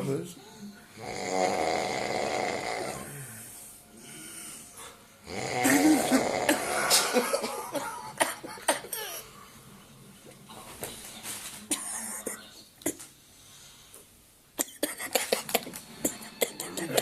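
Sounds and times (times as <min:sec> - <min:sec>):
man snoring heavily: 0:01.0 - 0:04.5, 0:05.2 - 0:07.0.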